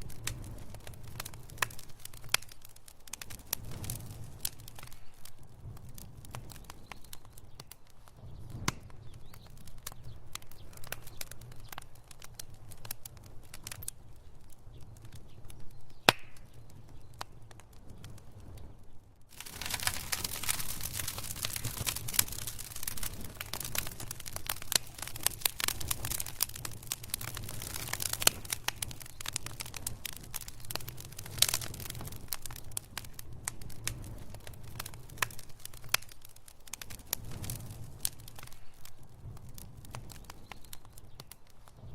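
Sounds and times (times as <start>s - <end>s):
sharp pops and snaps: 0.0s - 18.7s, 19.3s - 41.9s
low rumble of flame: 0.0s - 41.9s
wood fire crackling: 0.0s - 41.9s.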